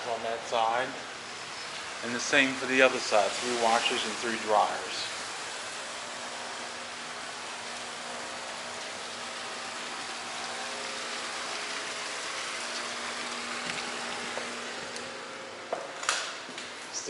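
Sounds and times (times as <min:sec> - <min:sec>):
running water rushing: 0:00.1 - 0:15.7.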